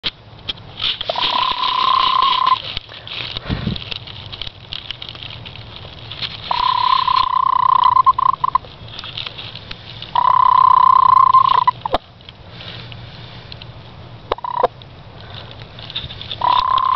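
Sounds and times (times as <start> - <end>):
hen purring: 1.1 - 3.6, 16.4 - 16.9.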